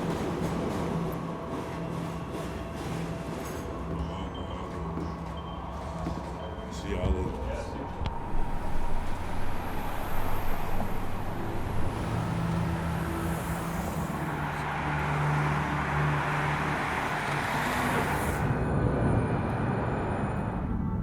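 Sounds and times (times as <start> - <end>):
road noise: 0.0 - 21.0
vehicle engine: 7.8 - 20.9.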